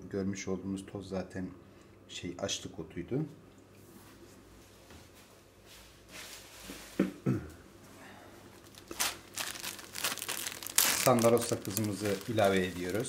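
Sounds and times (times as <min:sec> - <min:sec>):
plastic packet crinkling: 0:08.6 - 0:13.0.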